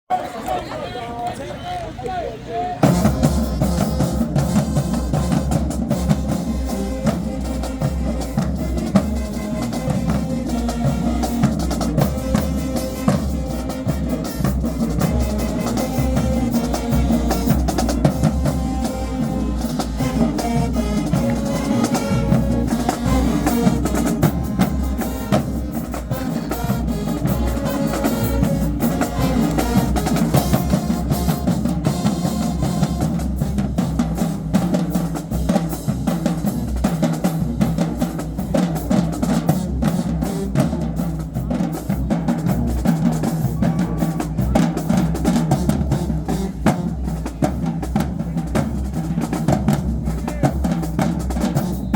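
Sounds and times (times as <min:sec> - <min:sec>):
marching band playing: 0:00.1 - 0:51.9
held horn notes: 0:00.9 - 0:34.0
bass and snare drums: 0:02.8 - 0:51.9.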